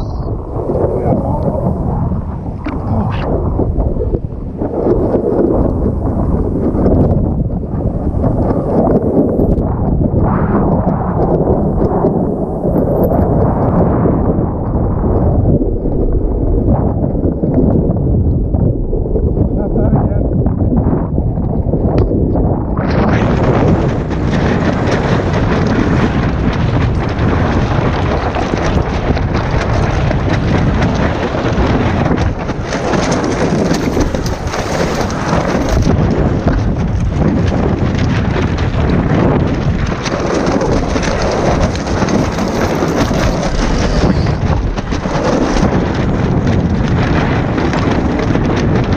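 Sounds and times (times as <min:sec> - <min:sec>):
water and spray patter: 0:00.0 - 0:09.6, 0:22.9 - 0:48.9
wind buffeting microphone: 0:00.0 - 0:48.9.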